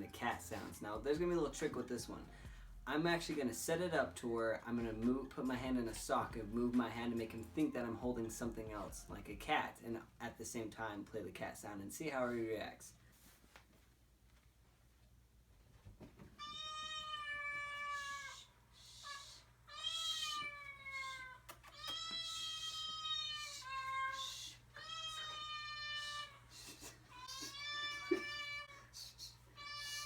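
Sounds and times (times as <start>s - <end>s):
cat meowing: 16.4s - 26.4s, 27.1s - 28.9s, 29.6s - 30.0s.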